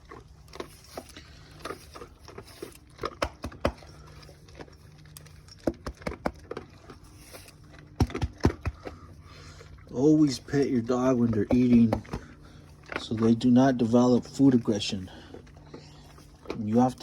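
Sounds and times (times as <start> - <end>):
dog eating from a bowl: 0.0 - 17.0.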